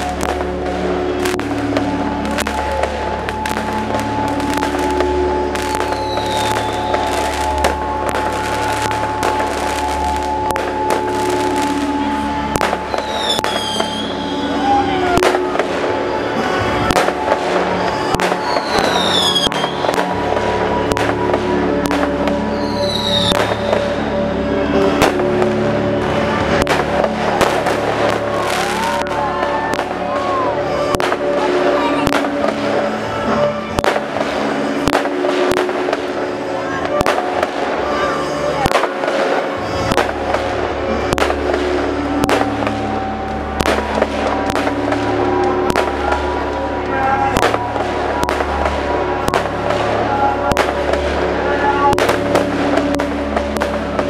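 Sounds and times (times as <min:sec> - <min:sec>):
firework shells whistling: 0:00.0 - 0:24.2, 0:38.6 - 0:46.4
background music: 0:00.0 - 0:54.0
fireworks bangs: 0:00.0 - 0:54.0.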